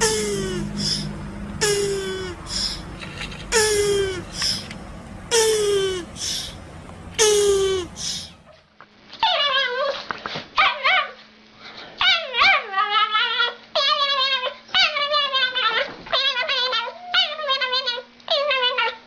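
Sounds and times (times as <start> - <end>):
dog whining and yipping: 9.2 - 10.0, 12.0 - 19.0.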